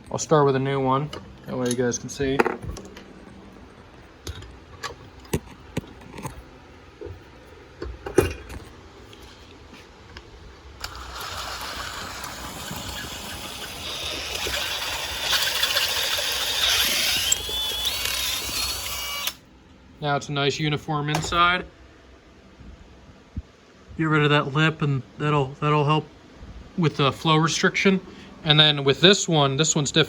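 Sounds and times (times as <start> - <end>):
drill cutting metal: 10.8 - 19.4.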